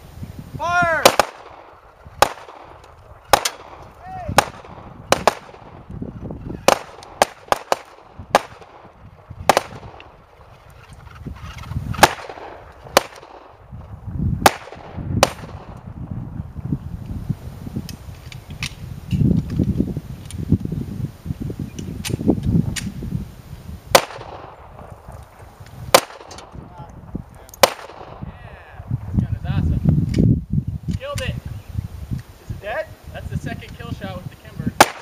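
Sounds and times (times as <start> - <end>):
game gunshots: 1.0 - 5.8.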